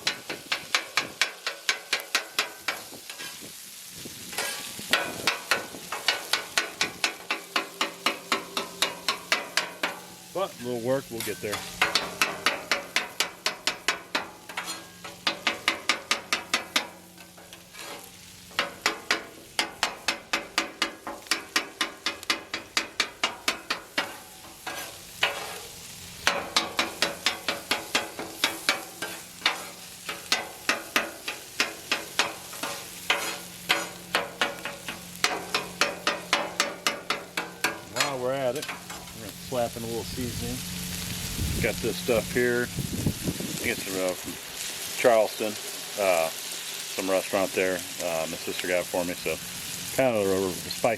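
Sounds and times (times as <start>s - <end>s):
metal spatula clanking on griddle: 0.0s - 3.4s, 4.3s - 10.3s, 11.1s - 39.3s
meat sizzling: 0.0s - 50.9s.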